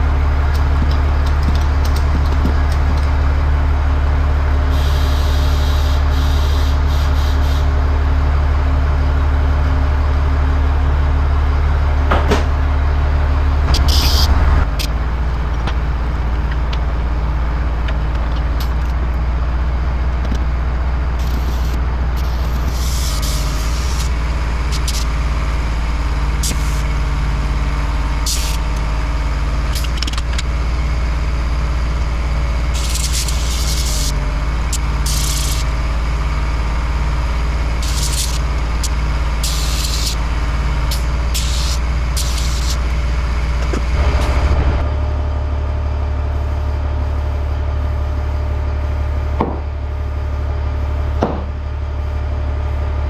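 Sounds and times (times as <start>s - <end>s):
air compressor running: 0.0s - 53.0s
air hissing from inflator: 4.7s - 7.7s, 13.7s - 14.9s, 21.2s - 25.2s, 26.3s - 27.0s, 28.2s - 28.8s, 32.7s - 35.8s, 37.7s - 43.0s.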